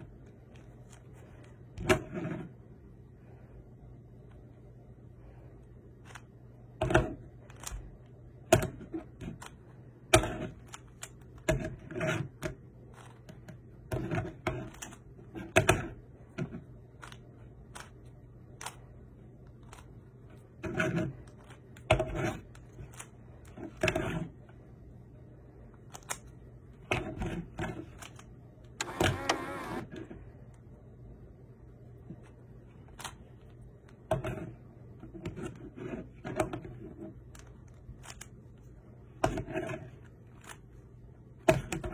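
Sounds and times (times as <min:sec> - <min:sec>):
plastic puzzle cube layers clicking: 0:07.0 - 0:24.2, 0:25.8 - 0:26.4, 0:36.2 - 0:38.4.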